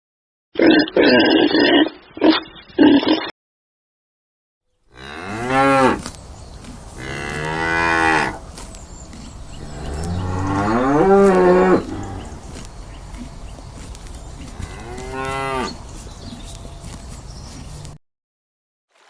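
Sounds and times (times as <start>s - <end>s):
cow mooing: 4.9s - 6.0s, 7.0s - 8.4s, 9.6s - 12.4s, 14.6s - 15.8s.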